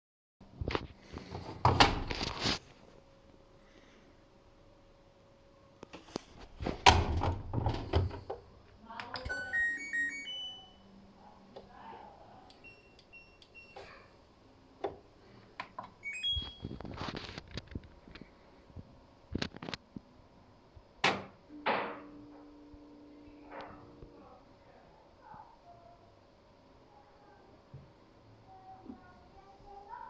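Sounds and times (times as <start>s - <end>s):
rustling noise: 0.5s - 3.0s, 5.9s - 6.8s, 16.4s - 20.0s
washing machine beeping: 9.2s - 10.9s, 12.6s - 14.0s, 16.0s - 16.8s.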